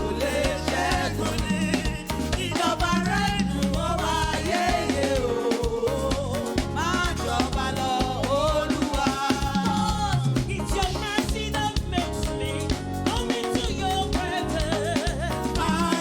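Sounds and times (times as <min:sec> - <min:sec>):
voices singing: 0:00.0 - 0:10.5
band with bass and drums: 0:00.0 - 0:16.0.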